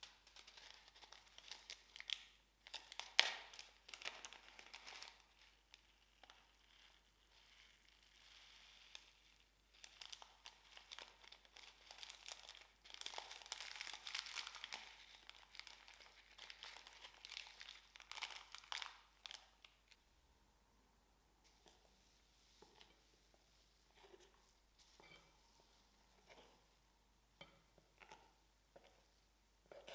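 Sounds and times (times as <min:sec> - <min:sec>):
slime squishing and crackling: 0:00.0 - 0:20.0.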